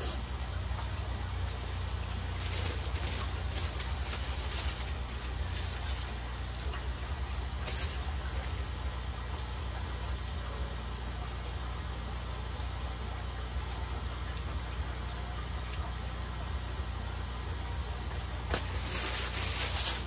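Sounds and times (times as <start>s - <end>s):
steady low hum: 0.0s - 20.0s
plastic packaging crinkling: 0.6s - 9.4s, 18.5s - 20.0s.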